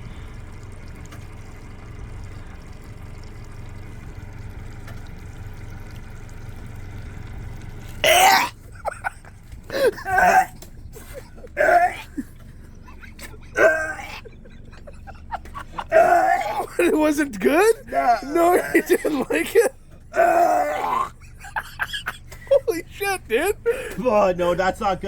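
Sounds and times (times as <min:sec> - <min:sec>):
man gagging and coughing: 0:08.0 - 0:24.0.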